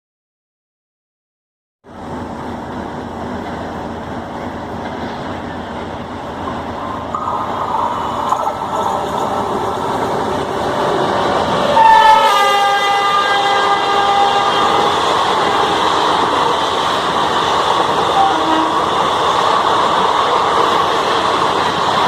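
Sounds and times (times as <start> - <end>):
train rumbling past: 1.8 - 22.0
locomotive horn: 11.7 - 16.0, 18.1 - 19.1.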